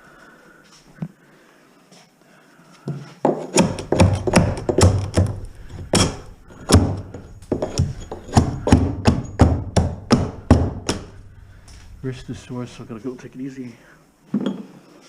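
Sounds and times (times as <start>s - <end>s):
hand tools knocking wood and metal: 3.2s - 11.2s.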